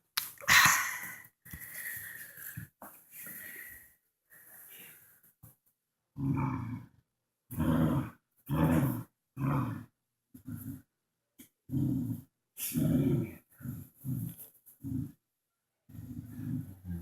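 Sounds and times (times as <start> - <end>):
dog growling: 6.2 - 10.9, 11.7 - 15.2, 15.9 - 17.0.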